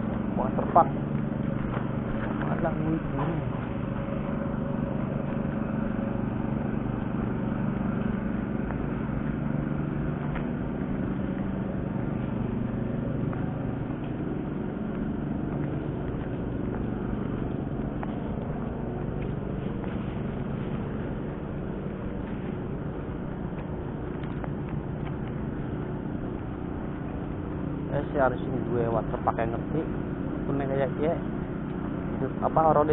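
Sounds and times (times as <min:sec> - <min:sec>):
vehicle engine running steadily: 0:00.0 - 0:32.9.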